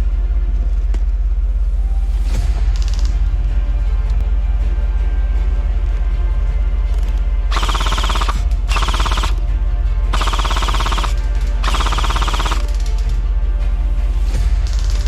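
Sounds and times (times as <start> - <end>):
airsoft gun automatic bursts: 7.5 - 9.4, 10.2 - 12.7.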